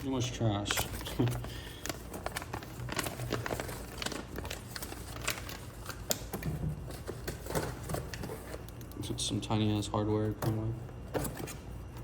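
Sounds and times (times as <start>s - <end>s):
plastic packaging crinkling: 0.0s - 9.1s.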